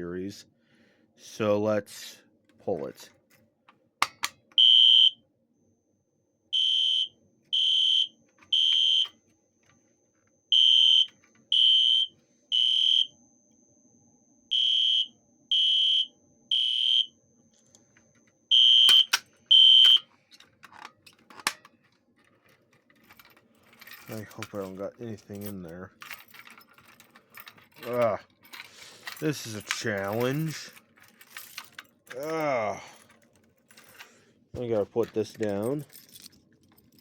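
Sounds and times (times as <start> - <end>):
fire alarm horn blasts: 4.6 - 5.2, 6.5 - 9.2, 10.5 - 17.2, 18.5 - 20.1.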